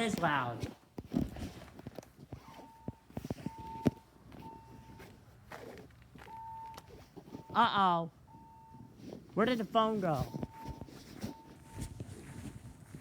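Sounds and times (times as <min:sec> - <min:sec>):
fire alarm beeping: 0:02.4 - 0:05.0, 0:06.2 - 0:09.0, 0:09.7 - 0:12.4.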